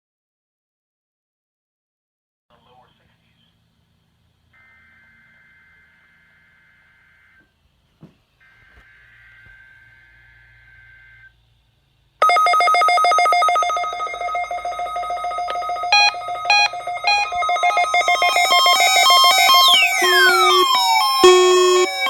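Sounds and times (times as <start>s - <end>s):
loud buzzing alarm tone: 12.2s - 22.0s
on-off beeping: 12.2s - 22.0s
falling siren-like sweep: 13.4s - 22.0s.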